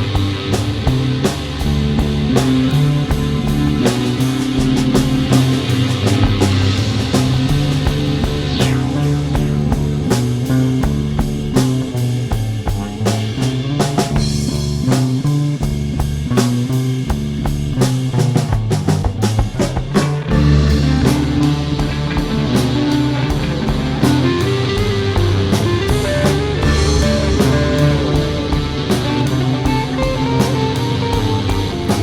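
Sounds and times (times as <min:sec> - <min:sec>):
psychedelic rock band playing: 0:00.0 - 0:32.0
lead guitar bending notes: 0:20.3 - 0:32.0.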